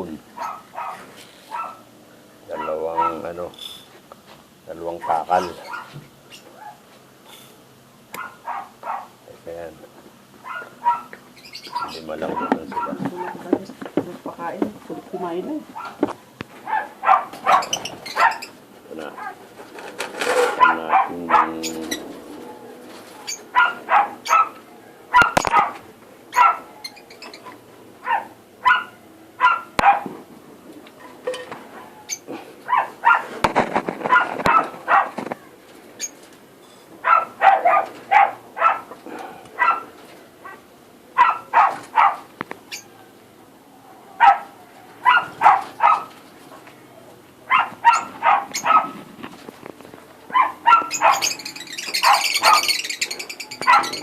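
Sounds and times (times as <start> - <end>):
short animal calls: 20.3 - 24.6.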